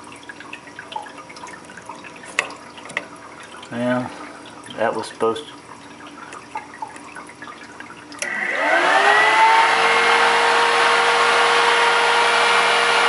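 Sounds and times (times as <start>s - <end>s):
electric cooling fan whining: 8.2s - 13.0s.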